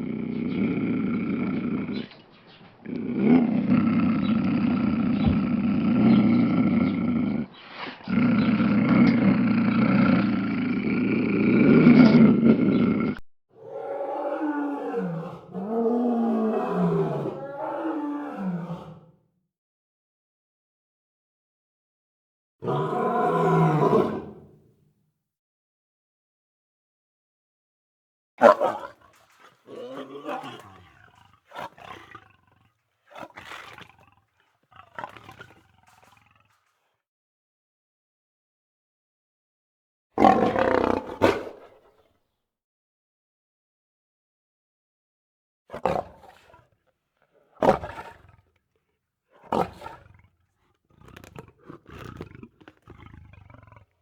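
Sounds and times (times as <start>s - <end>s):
lion roaring: 0.0s - 19.1s, 22.6s - 24.6s, 28.4s - 32.6s, 40.2s - 41.7s, 47.6s - 48.4s, 49.4s - 50.3s, 50.9s - 54.0s.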